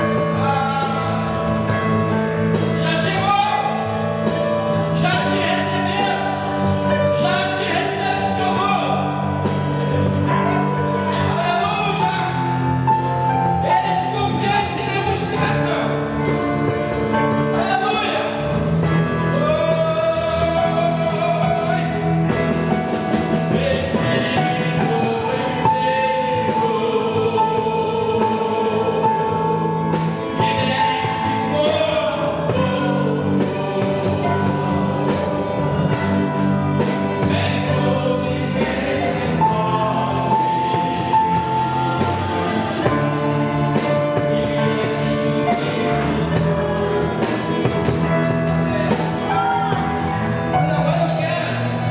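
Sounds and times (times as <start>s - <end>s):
voices singing together: 19.3s - 51.9s.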